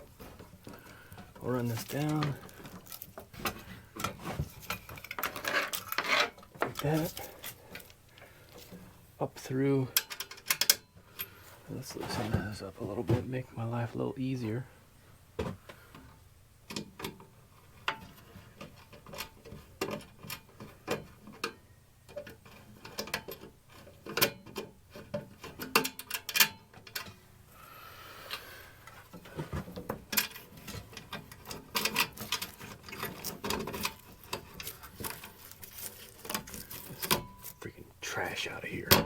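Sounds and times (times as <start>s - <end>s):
hand tools clicking and tapping: 29.1s - 37.6s.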